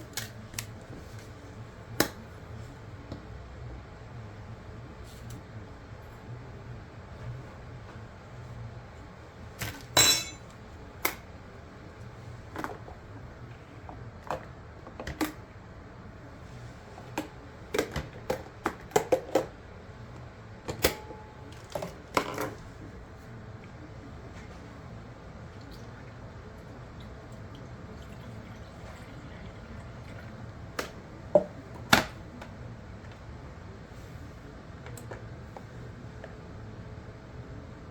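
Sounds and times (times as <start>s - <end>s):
dishes clattering: 9.8s - 10.5s
dishes clinking and knocking: 9.8s - 10.5s.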